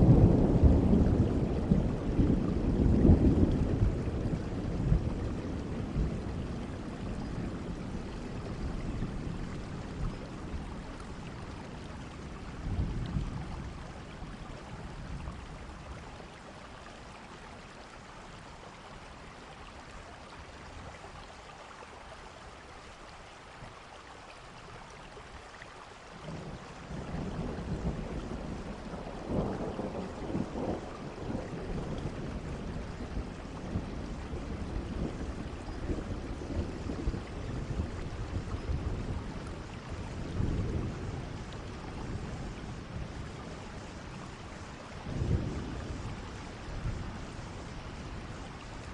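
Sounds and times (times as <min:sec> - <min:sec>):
thunder rumbling: 0:00.0 - 0:15.5, 0:26.3 - 0:48.9
steady rain: 0:00.0 - 0:48.9.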